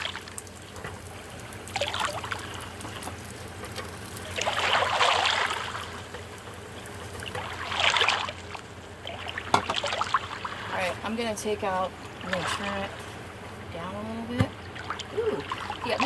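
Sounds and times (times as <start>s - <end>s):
water sloshing and splashing: 1.7s - 3.4s, 4.2s - 13.3s, 14.4s - 16.0s.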